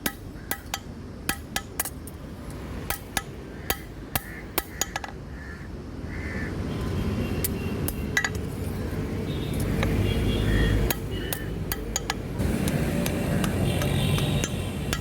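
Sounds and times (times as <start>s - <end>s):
hammer tapping on steel: 0.0s - 2.0s, 10.9s - 15.0s.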